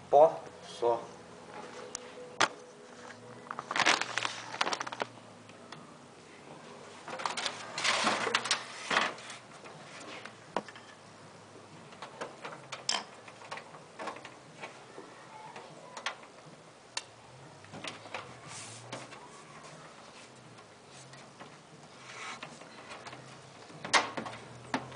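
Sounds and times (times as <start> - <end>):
scraping and rustling: 1.6 - 5.1, 6.8 - 11.0, 17.7 - 24.9.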